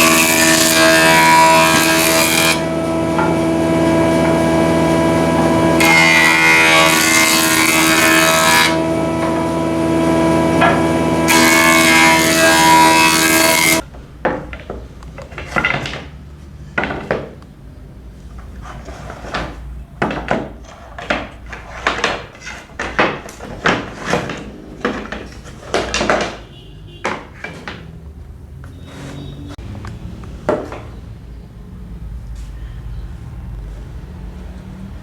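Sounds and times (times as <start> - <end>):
woodworking power tool running: 0.0 - 13.8
scraping strokes on wood: 0.0 - 13.9, 18.2 - 27.9, 28.6 - 29.6.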